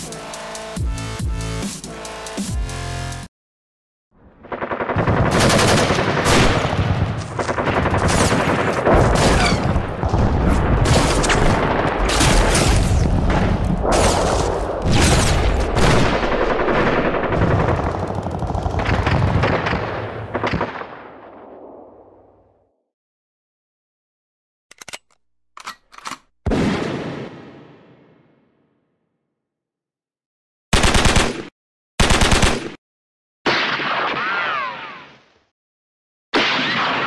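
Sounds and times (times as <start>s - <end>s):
rapid automatic gunfire: 4.4s - 12.7s, 13.3s - 21.0s, 30.7s - 32.8s.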